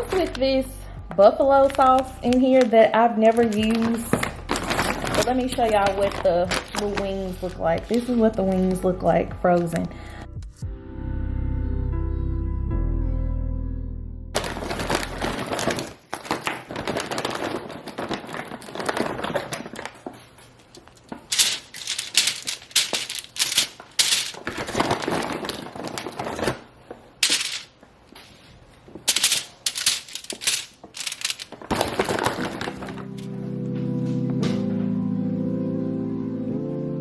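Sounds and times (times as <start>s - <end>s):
plastic packaging crinkling: 0.0s - 0.6s, 1.2s - 8.0s, 14.4s - 33.4s
frozen pieces clicking together: 1.6s - 7.2s, 14.4s - 20.0s, 20.7s - 26.6s, 27.2s - 27.7s, 29.1s - 33.4s.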